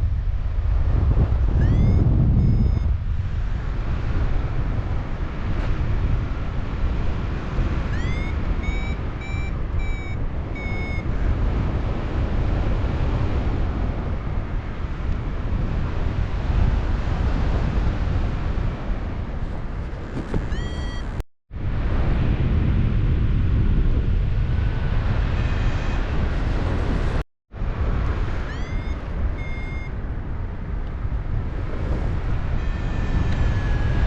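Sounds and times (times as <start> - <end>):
wind on microphone: 0.0 - 34.0
variometer high beeps: 1.6 - 2.9, 7.9 - 11.1, 20.4 - 21.2, 28.4 - 30.0, 32.6 - 34.0.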